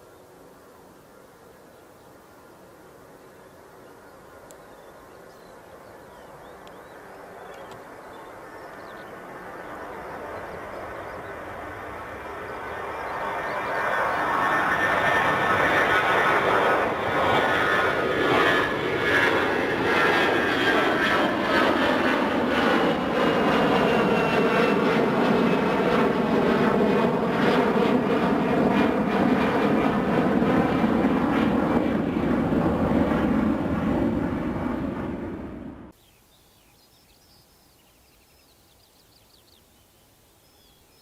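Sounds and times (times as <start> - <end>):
small birds chirping faintly: 0.0 - 15.2, 35.9 - 41.0
jet airliner noise: 3.7 - 36.0.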